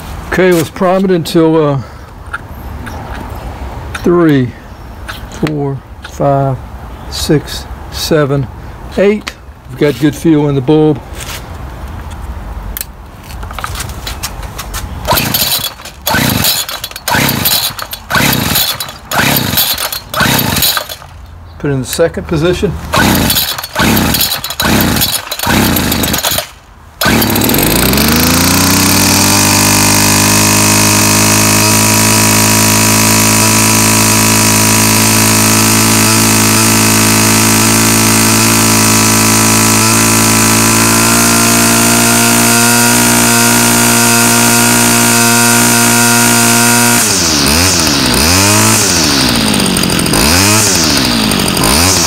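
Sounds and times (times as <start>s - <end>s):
string trimmer engine: 15.0s - 21.3s, 22.8s - 52.0s.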